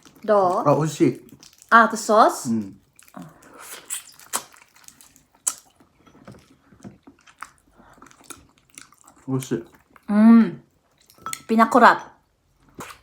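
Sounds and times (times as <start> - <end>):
person chewing food: 0.0 - 1.8, 2.6 - 10.1.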